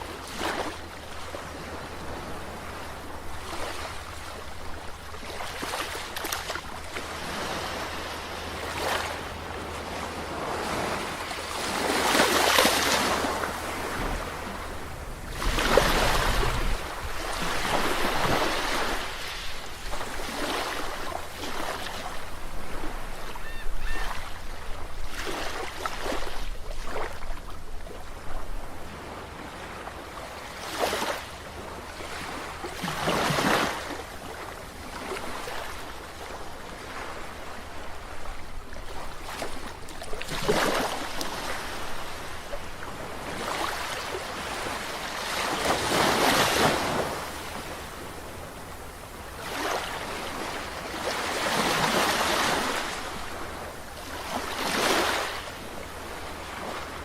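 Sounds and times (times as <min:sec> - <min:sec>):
waves breaking: 0:00.0 - 0:57.0
low surf rumble: 0:13.2 - 0:18.3.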